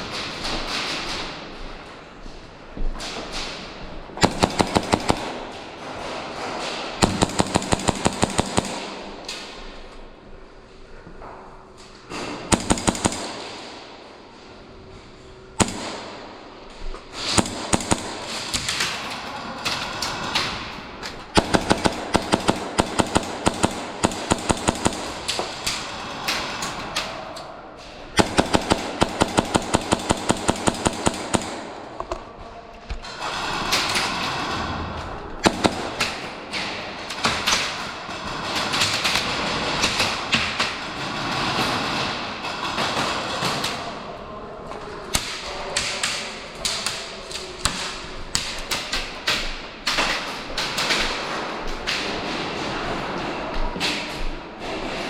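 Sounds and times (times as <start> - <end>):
airsoft guns firing full auto: 4.2 - 9.9, 12.1 - 14.2, 15.6 - 27.1, 28.1 - 32.2, 35.4 - 44.0.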